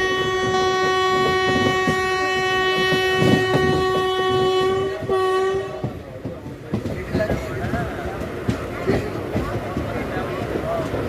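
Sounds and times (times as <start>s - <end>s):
train horn blast: 0.0s - 6.0s
train wheels rattling on track: 0.0s - 11.0s.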